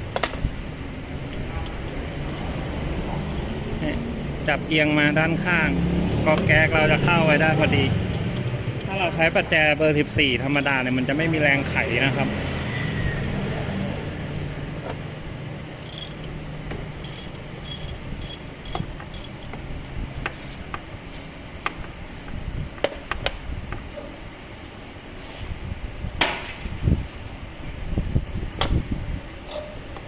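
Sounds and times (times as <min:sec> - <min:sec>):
sharp metallic ticks: 0:03.2 - 0:03.5, 0:10.5 - 0:11.0, 0:15.8 - 0:16.4, 0:17.0 - 0:19.9
tool clicks and knocks: 0:15.9 - 0:19.6.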